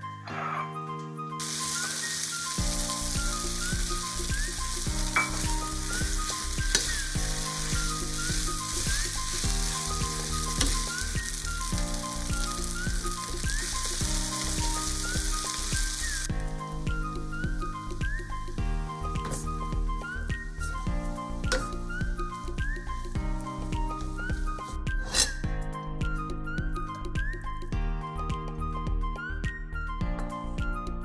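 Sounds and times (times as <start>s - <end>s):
light background music with beat: 0.0s - 31.0s
food sizzling in a hot pan: 1.4s - 25.4s.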